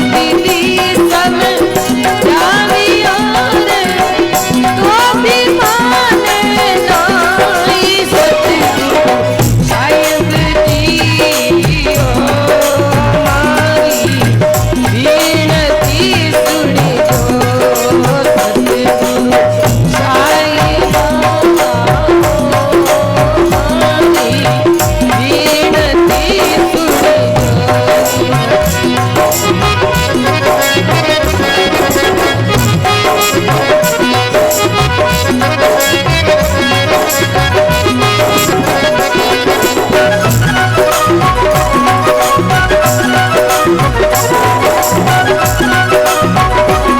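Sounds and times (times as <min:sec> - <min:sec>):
hand drum beat: 0:00.0 - 0:46.9
jingling rattle percussion: 0:00.0 - 0:46.9
wavering melodic lead: 0:23.5 - 0:46.9.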